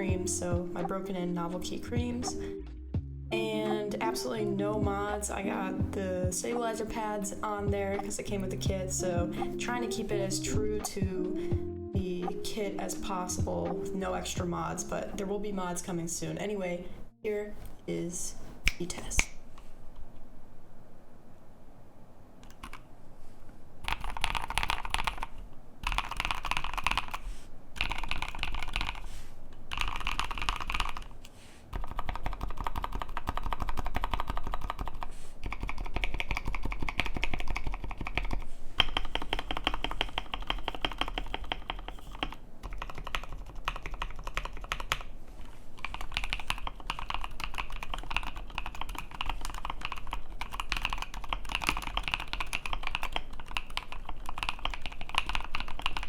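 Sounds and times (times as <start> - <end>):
fast typing on mechanical keyboard: 22.4 - 22.9, 23.8 - 29.1, 29.7 - 45.1, 45.8 - 56.0.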